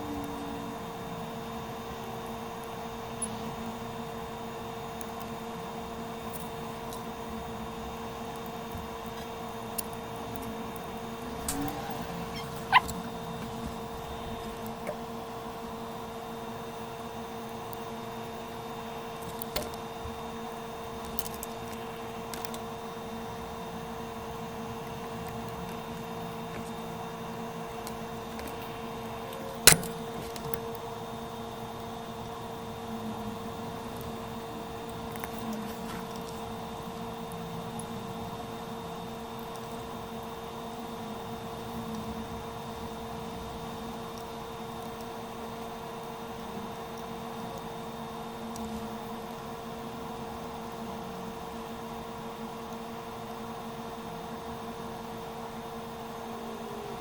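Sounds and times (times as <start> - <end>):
equipment hum: 0.0 - 57.0
high-pitched squeak: 11.3 - 13.1
tool clicks: 29.7 - 30.6.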